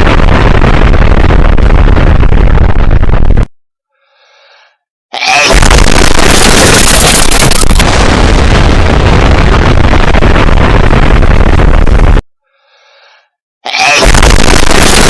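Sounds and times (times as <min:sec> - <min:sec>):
loud explosion with low rumble: 0:00.0 - 0:03.5, 0:05.5 - 0:12.2, 0:14.0 - 0:15.0.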